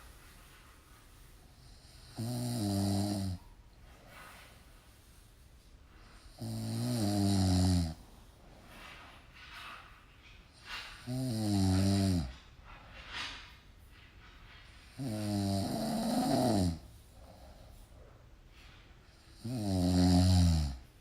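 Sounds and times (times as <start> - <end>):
quiet breathing: 0.0 - 21.0
person snoring: 1.6 - 3.4, 6.3 - 8.0, 11.0 - 12.4, 15.0 - 16.9, 19.3 - 20.9.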